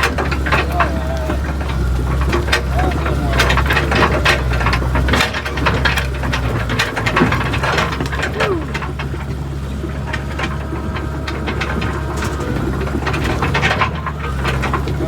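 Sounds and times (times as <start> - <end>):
excavator diesel engine running: 0.0 - 15.0
machine clanking and knocking: 0.0 - 15.0.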